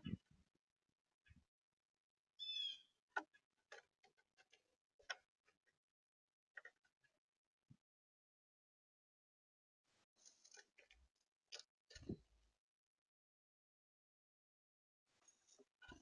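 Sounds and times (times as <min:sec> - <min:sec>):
bird call: 0:02.4 - 0:02.9.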